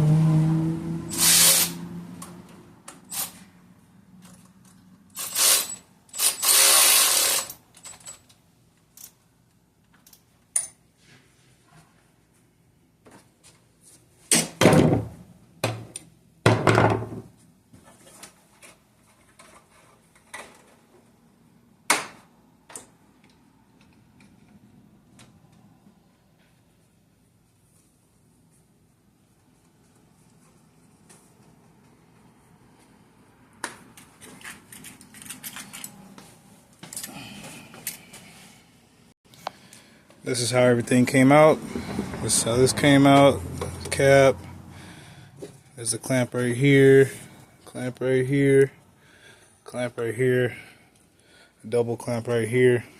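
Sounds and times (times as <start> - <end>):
hard parts clicking and rattling: 4.2 - 9.2, 34.0 - 36.0.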